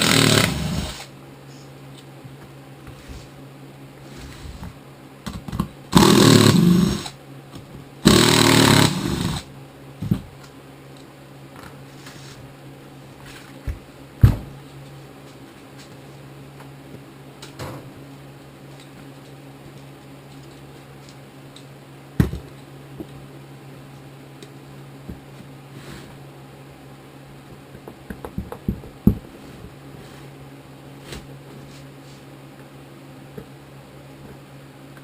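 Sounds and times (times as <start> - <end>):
power tool running: 0.0 - 1.1, 5.9 - 7.2, 8.0 - 9.5.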